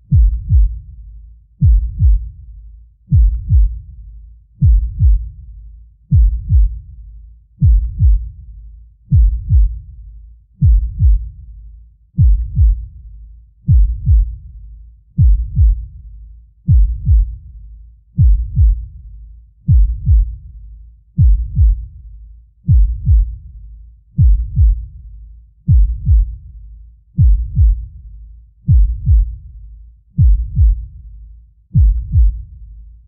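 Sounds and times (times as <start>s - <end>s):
heartbeat thumps: 0.0s - 0.9s, 1.6s - 2.4s, 3.1s - 3.9s, 4.6s - 5.4s, 6.1s - 6.9s, 7.6s - 8.4s, 9.1s - 9.9s, 10.6s - 11.4s, 12.2s - 13.0s, 13.7s - 14.5s, 15.2s - 16.0s, 16.7s - 17.5s, 18.2s - 19.0s, 19.7s - 20.5s, 21.2s - 21.9s, 22.7s - 23.5s, 24.2s - 25.0s, 25.7s - 26.5s, 27.2s - 28.0s, 28.7s - 29.5s, 30.2s - 31.0s, 31.7s - 32.6s.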